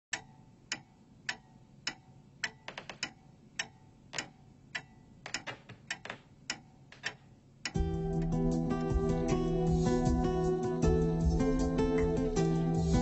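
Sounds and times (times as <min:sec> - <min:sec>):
clock-like ringing ticks: 0:00.1 - 0:07.9.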